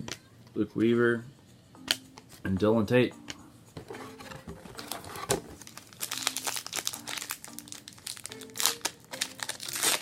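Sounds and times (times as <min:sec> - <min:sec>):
wrapper crinkling: 0:04.8 - 0:10.0.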